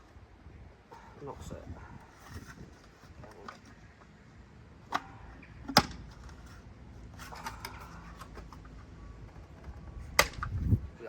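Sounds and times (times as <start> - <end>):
plastic part snapping into place: 10.2 - 10.6.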